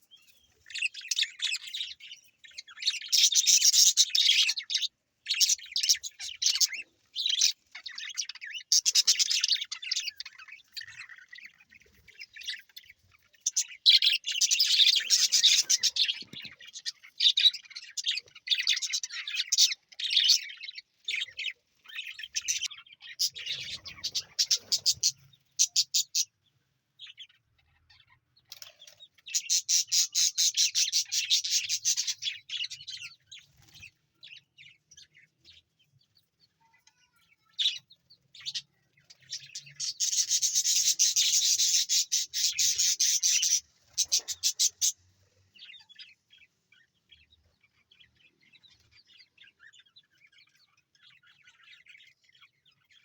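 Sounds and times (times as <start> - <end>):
budgerigars chirping: 0.4 - 26.3, 27.0 - 34.4, 37.6 - 45.0.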